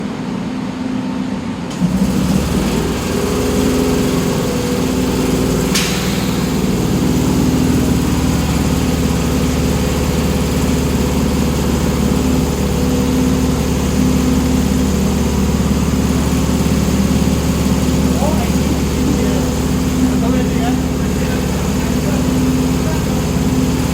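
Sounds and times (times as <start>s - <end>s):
air compressor humming: 1.3s - 23.9s.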